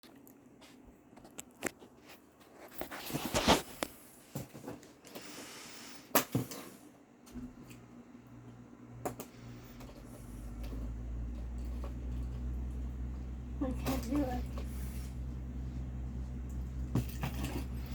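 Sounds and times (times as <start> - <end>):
steady low hum: 7.3 - 17.9
handling clicks and knocks: 13.8 - 17.9.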